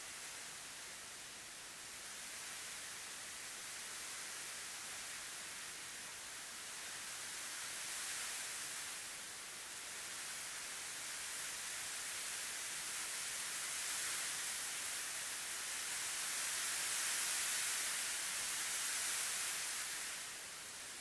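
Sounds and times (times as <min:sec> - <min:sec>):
steady high hiss: 0:00.0 - 0:21.0.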